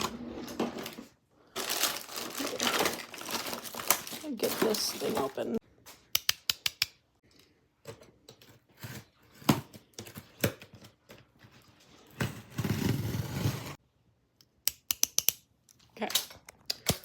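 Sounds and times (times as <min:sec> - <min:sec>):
cardboard rustling and scraping: 0:11.3 - 0:13.8.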